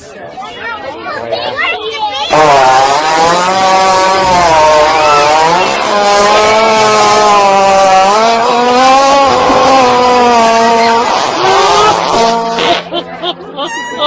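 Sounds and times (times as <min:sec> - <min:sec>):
comedic fart sound effect: 0:02.3 - 0:13.3.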